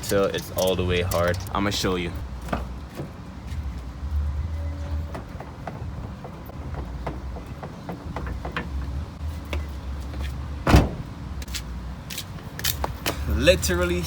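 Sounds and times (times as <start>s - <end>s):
heavy thump: 10.6s - 11.1s.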